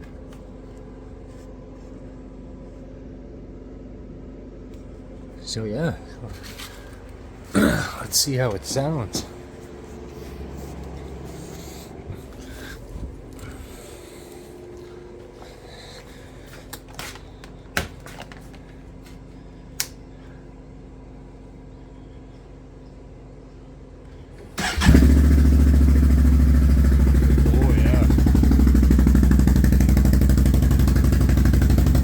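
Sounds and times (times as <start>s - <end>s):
engine starting and running: 24.4s - 32.0s.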